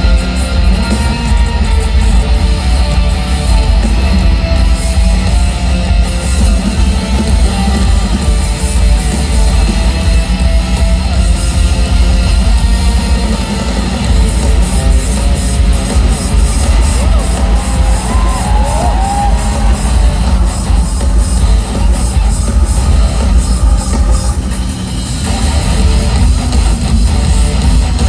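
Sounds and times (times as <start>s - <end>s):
electric guitar: 0.0s - 28.0s
live rock band playing: 0.0s - 28.0s.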